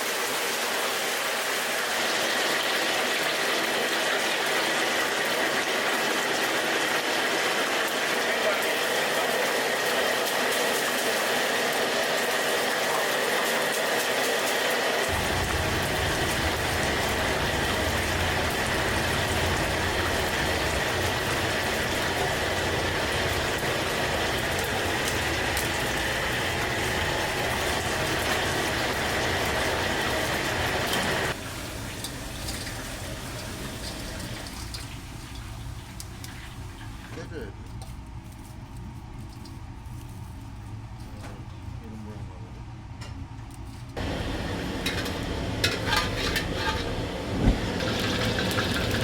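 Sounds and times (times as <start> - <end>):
rushing kitchen noise: 0.0 - 41.7, 43.8 - 49.0
deep rumble: 15.1 - 28.2.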